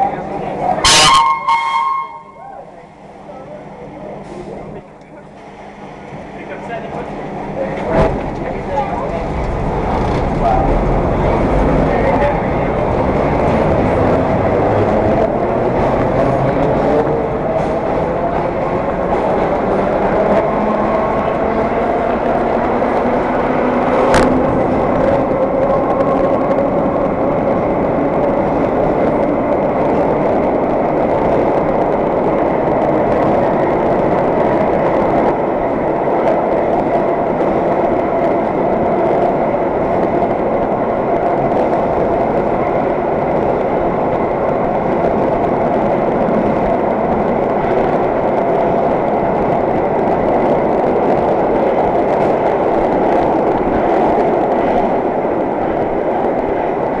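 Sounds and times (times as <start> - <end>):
subway car wheels rumbling on rail: 0.0 - 57.0.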